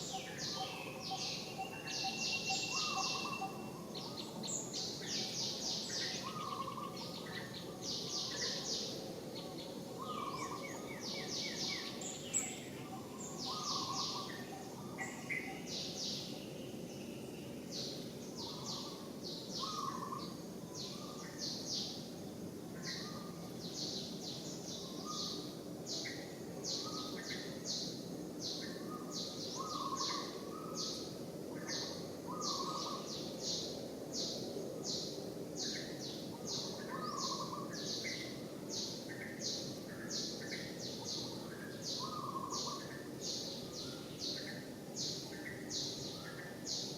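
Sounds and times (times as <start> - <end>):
birds chirping: 0.0 - 17.1
lower bird calls: 0.0 - 22.0, 22.8 - 46.9
outdoor background noise: 0.0 - 46.9.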